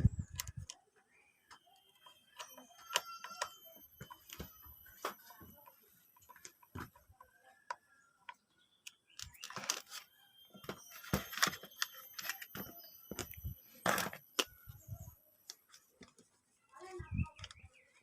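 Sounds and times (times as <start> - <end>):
handling clicks and knocks: 1.5 - 14.8.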